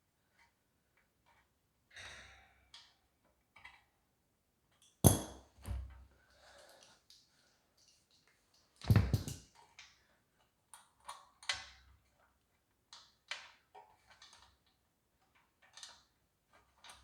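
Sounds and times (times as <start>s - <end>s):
sharp metal knocks: 5.1s - 5.4s.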